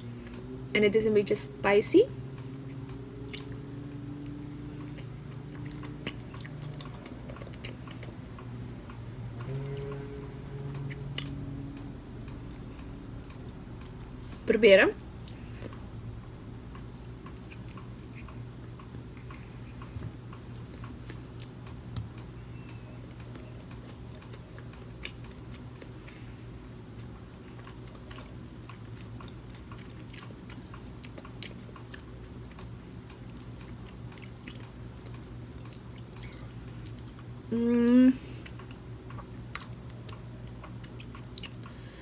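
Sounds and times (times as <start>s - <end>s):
steady low hum: 0.0s - 42.0s
person chewing: 3.2s - 3.6s, 4.5s - 8.2s, 10.7s - 11.4s, 15.1s - 16.0s, 17.1s - 22.2s, 23.2s - 37.3s, 38.2s - 41.8s.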